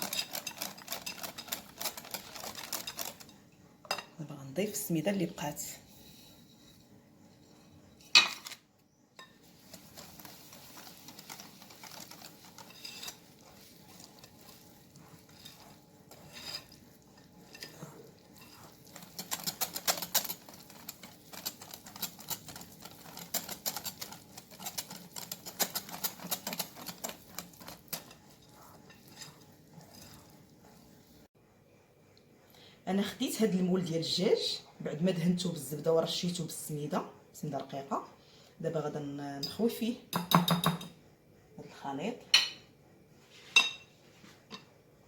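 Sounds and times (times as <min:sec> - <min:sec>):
spoon scraping a bowl: 0:00.0 - 0:04.1, 0:05.8 - 0:08.5, 0:09.2 - 0:31.2.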